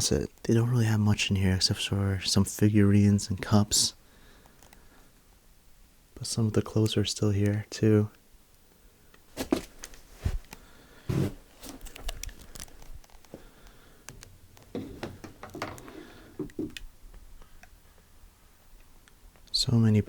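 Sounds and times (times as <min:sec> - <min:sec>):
person moving and handling things: 0:09.1 - 0:19.6.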